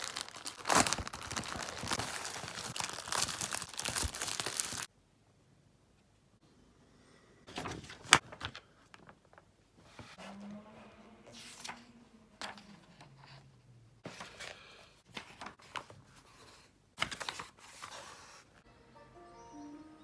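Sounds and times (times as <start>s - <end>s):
packaging crinkling and tearing: 0.0s - 4.9s.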